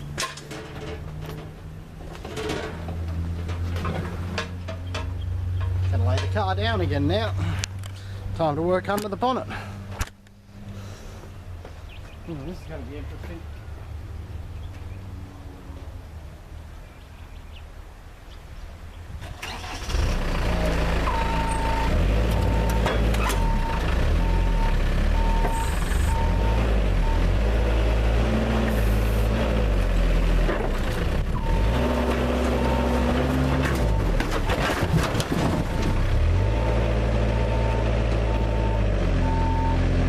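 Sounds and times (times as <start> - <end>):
forklift engine revving: 19.2 - 40.0
reversing alarm beeps: 21.1 - 27.3, 31.4 - 31.8, 36.4 - 39.8.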